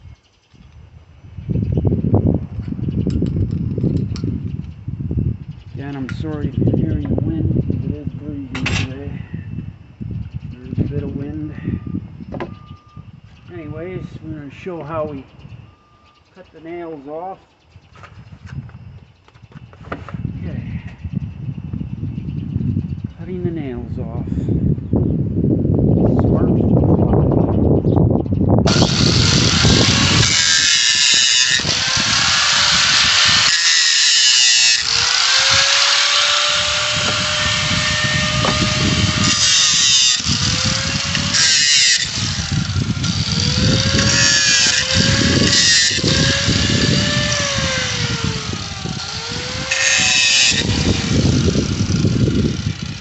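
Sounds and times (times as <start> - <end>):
wind buffeting microphone: 0.0 - 53.0
angle grinder whine: 28.7 - 53.0
disc cutting metal: 28.7 - 53.0.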